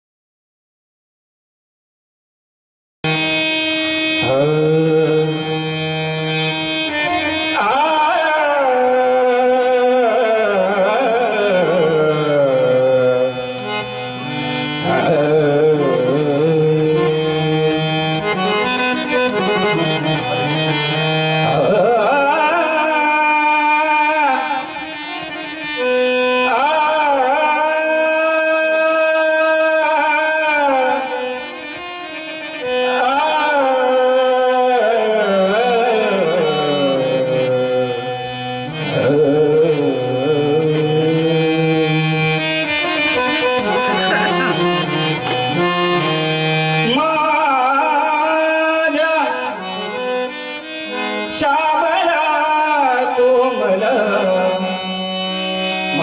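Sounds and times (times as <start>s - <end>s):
harmonium held notes: 3.0s - 56.0s
person singing: 3.1s - 31.6s, 32.7s - 42.5s, 43.1s - 46.1s, 55.7s - 56.0s.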